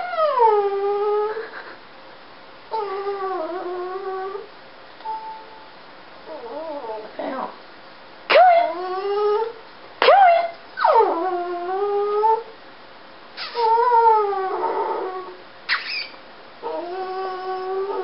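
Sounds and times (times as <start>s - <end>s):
dog whining and howling: 0.0s - 1.4s, 2.7s - 4.5s, 6.2s - 7.1s, 8.3s - 12.6s, 13.4s - 18.0s
dog yipping: 8.3s - 11.2s, 13.4s - 14.0s, 15.7s - 16.8s.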